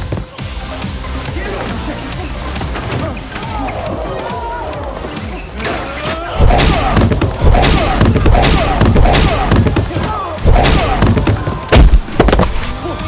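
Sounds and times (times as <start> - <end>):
voices: 0.0 - 13.0
heavy thuds: 4.9 - 12.8
gunshot-like blasts: 6.4 - 9.8, 10.4 - 11.2
deep booming hit: 6.4 - 12.7.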